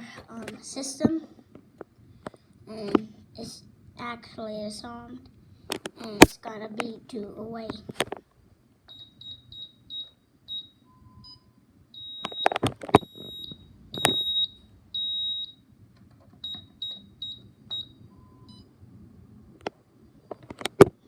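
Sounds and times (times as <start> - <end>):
alarm system beeping: 8.9 - 15.6, 16.4 - 18.7.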